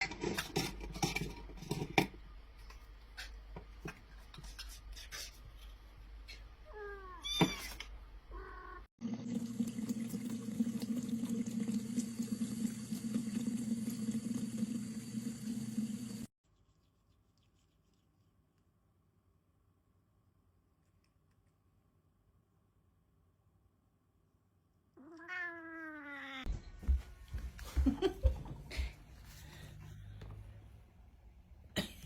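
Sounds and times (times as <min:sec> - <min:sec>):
cat meowing: 0:25.0 - 0:26.5.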